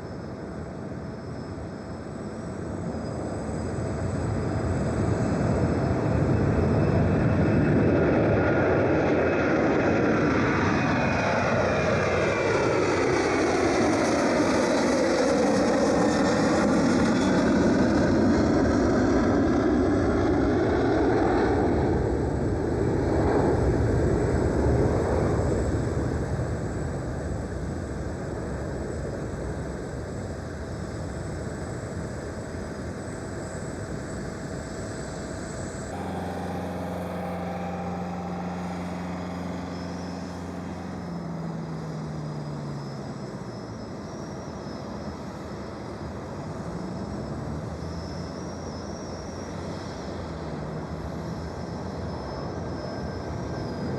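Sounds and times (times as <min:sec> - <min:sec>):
jet engine hum: 0:00.0 - 0:53.9
jet aircraft passing: 0:03.4 - 0:26.9, 0:32.6 - 0:53.9
held tones: 0:35.9 - 0:42.4.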